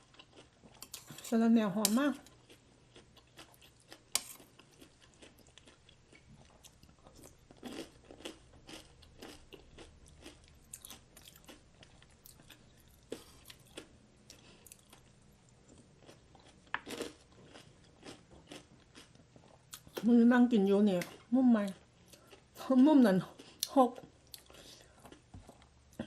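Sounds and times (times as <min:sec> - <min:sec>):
person chewing crisp food: 0:00.0 - 0:01.3, 0:01.9 - 0:20.0, 0:22.0 - 0:22.5, 0:23.3 - 0:26.0.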